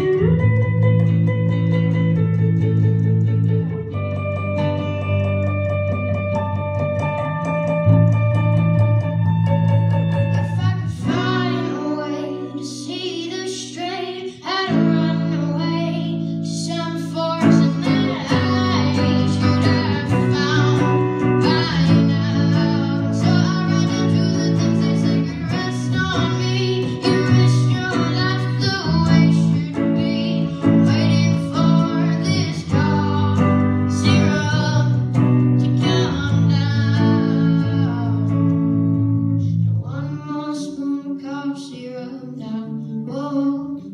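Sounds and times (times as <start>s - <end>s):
live rock song on guitars: 0.0s - 43.9s
person singing: 8.6s - 43.9s.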